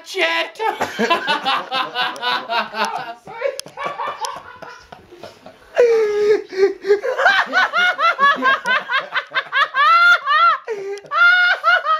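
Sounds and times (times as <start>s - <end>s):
loud high-pitched laughter: 5.8s - 11.9s.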